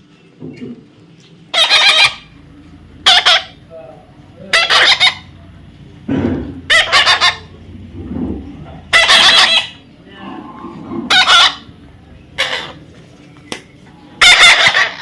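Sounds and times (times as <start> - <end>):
parrot screeching: 1.5 - 5.4, 6.6 - 7.7, 8.8 - 9.9, 10.7 - 12.8, 14.2 - 15.0.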